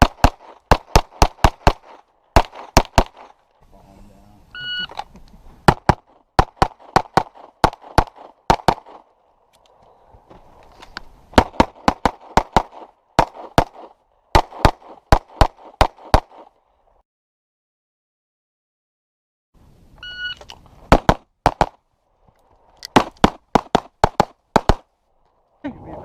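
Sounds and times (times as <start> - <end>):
handgun shots: 0.0 - 3.4.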